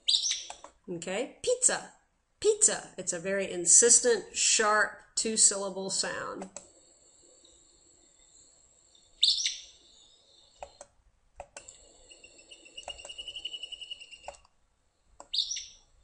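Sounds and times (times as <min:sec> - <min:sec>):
bird two-syllable call: 0:00.0 - 0:00.5, 0:09.2 - 0:09.8, 0:12.1 - 0:14.3, 0:15.3 - 0:15.8
high pulsing bird trill: 0:08.3 - 0:10.6, 0:12.0 - 0:14.3.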